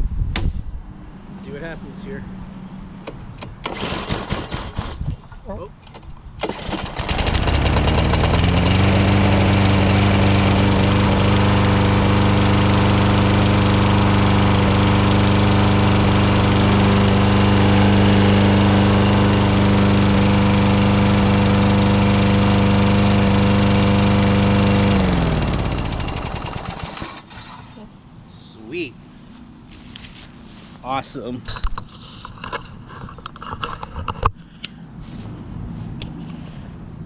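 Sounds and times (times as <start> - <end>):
lawn mower engine running: 3.2 - 5.1, 6.4 - 27.7.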